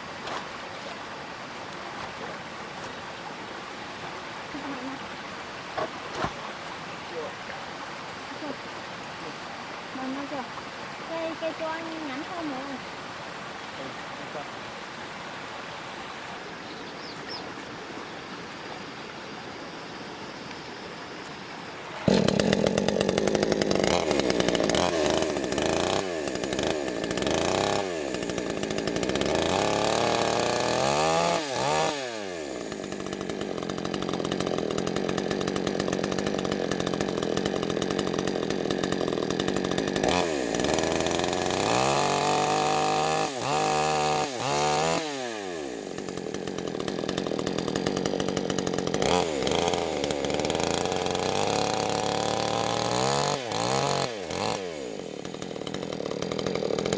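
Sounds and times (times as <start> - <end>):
chainsaw cutting wood: 22.0 - 56.9.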